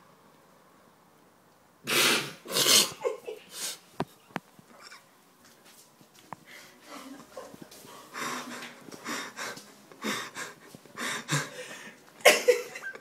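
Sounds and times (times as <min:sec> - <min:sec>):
loud snort: 0:01.8 - 0:03.0.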